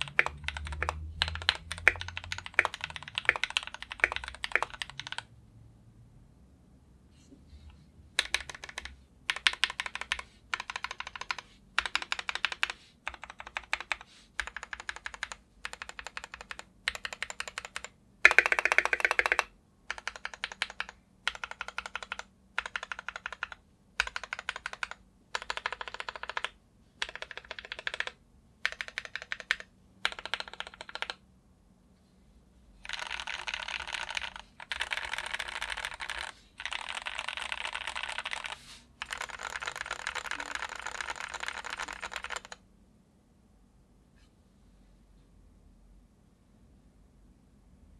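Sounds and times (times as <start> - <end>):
mechanical keyboard typing: 0.0 - 5.3, 8.2 - 31.2, 32.8 - 42.6.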